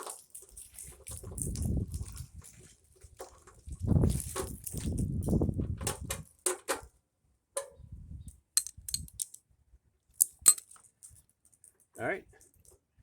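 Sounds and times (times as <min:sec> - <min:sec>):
tools clicking and tapping: 0:08.6 - 0:09.4, 0:10.2 - 0:10.8.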